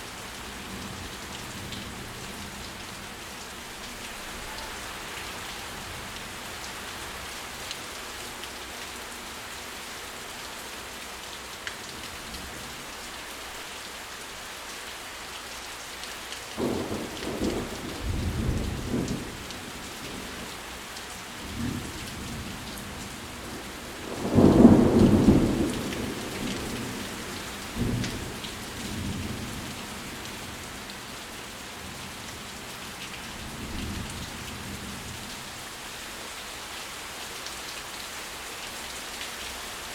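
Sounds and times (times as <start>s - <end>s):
steady rain falling: 0.0s - 39.9s
thunder rumbling: 24.0s - 27.0s.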